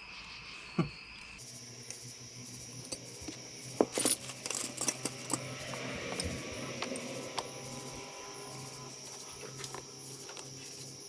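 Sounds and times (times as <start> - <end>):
small metal parts clinking: 2.7 - 7.6.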